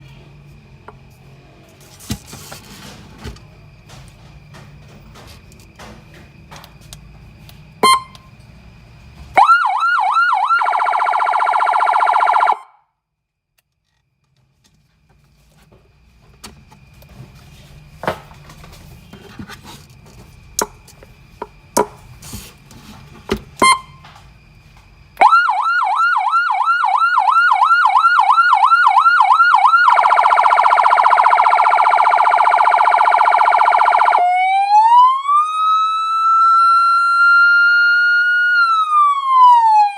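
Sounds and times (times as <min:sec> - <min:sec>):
electronic siren: 0:07.8 - 0:08.4, 0:09.3 - 0:12.9, 0:23.6 - 0:24.1, 0:25.2 - 0:39.9.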